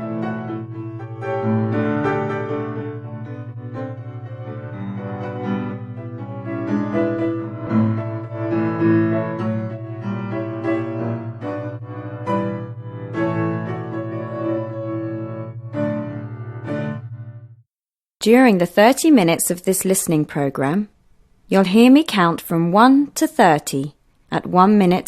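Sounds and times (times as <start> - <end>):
gentle piano music: 0.0 - 17.6.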